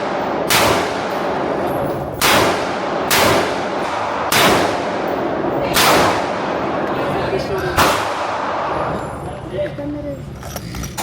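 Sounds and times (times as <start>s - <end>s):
gunshots with echo: 0.0s - 7.0s, 7.8s - 9.0s.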